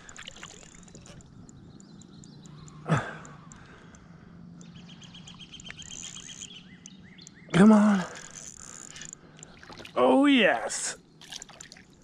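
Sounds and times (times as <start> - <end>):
faint bird chirps: 0.0 - 10.3
person grunting exhalation: 2.9 - 3.2.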